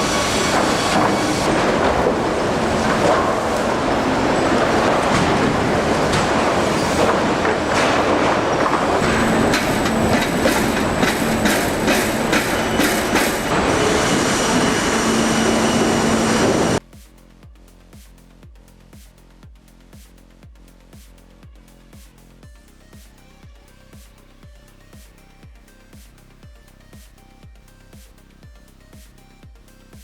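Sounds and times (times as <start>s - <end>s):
sharp knocks: 0.0s - 14.2s
machinery rattle and clatter: 0.0s - 16.8s
thin high whine: 0.0s - 16.8s.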